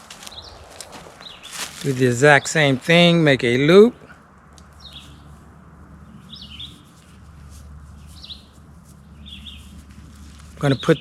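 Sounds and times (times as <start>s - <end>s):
faint low rumble: 0.0s - 10.8s
small bird chirping: 0.2s - 1.9s, 4.6s - 5.4s, 6.0s - 7.2s, 7.9s - 11.0s.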